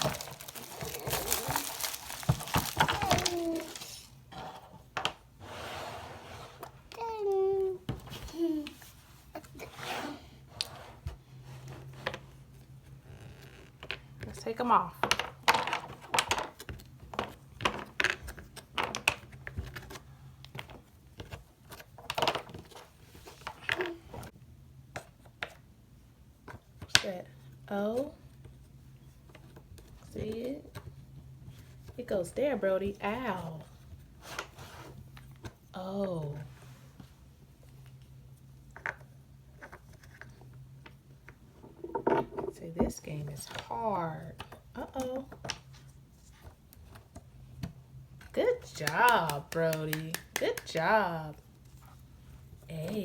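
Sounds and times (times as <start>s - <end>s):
wooden puzzle pieces clattering: 0.0s - 3.9s
child vocal sound: 2.8s - 4.0s.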